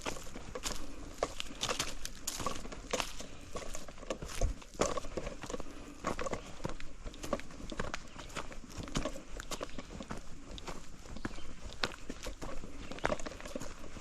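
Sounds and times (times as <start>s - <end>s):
footsteps on dirt trail: 0.0s - 14.0s.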